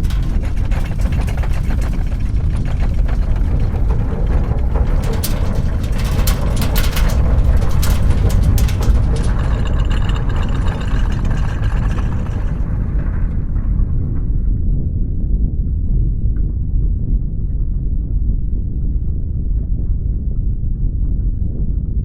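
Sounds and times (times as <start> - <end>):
rattling crackles: 0.0 - 14.4
deep earthquake rumble: 0.0 - 22.0.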